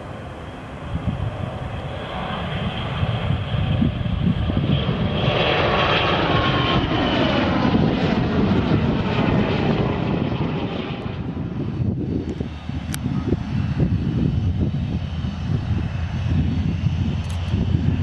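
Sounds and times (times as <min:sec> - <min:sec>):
jet engines passing close by: 0:00.0 - 0:18.0.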